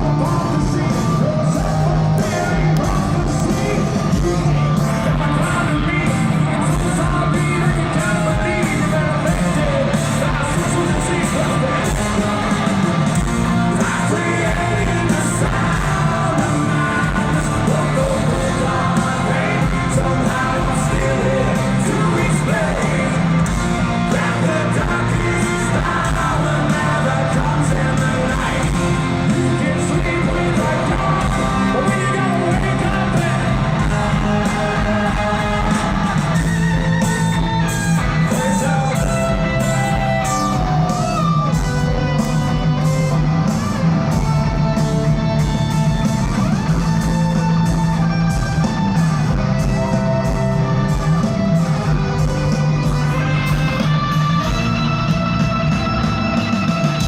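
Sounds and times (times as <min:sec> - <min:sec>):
person singing or yelling: 0:00.0 - 0:37.2
hard rock band playing: 0:00.0 - 0:57.0.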